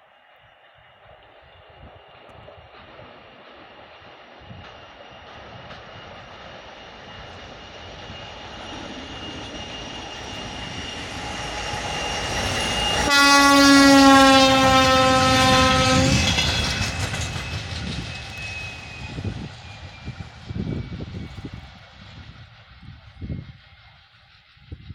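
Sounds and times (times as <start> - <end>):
diesel locomotive rumbling: 0.7 - 24.9
locomotive horn blast: 12.9 - 16.4.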